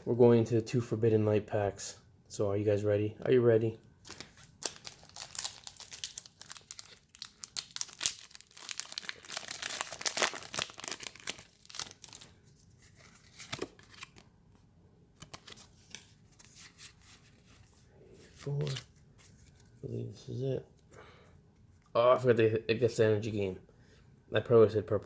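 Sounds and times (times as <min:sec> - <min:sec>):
foil wrapper tearing and crinkling: 0:04.1 - 0:12.4.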